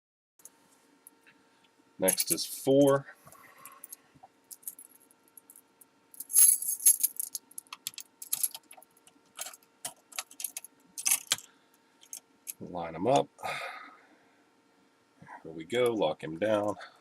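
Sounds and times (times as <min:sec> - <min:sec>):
metal keys clinking and rattling: 0:03.6 - 0:05.6, 0:06.2 - 0:12.2.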